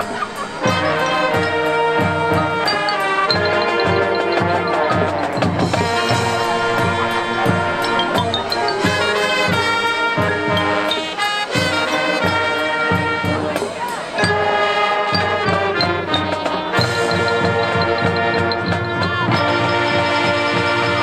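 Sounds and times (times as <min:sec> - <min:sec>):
steady drum beat: 0:00.0 - 0:14.6
held horn chords: 0:00.0 - 0:21.0
mallet percussion notes: 0:00.0 - 0:21.0.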